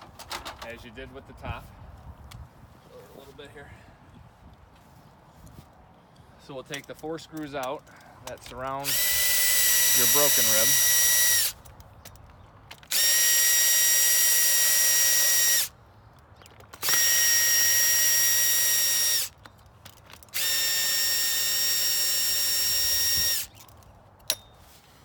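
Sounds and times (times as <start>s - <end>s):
power drill whine: 8.8s - 11.6s, 12.9s - 15.7s, 16.8s - 19.3s, 20.4s - 23.6s.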